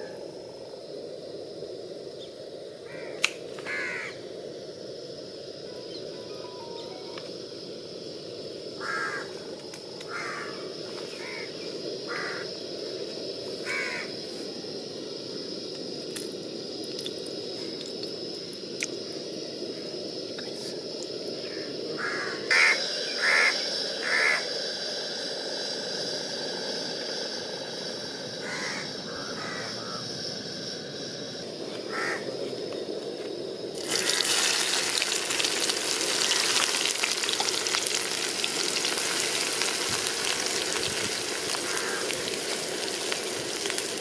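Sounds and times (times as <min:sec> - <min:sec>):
crows cawing: 0:02.9 - 0:04.2, 0:08.8 - 0:09.3, 0:10.1 - 0:10.6, 0:11.2 - 0:11.5, 0:12.1 - 0:12.5, 0:13.6 - 0:14.1, 0:22.0 - 0:24.4, 0:28.4 - 0:30.0, 0:31.9 - 0:32.3, 0:41.5 - 0:42.6.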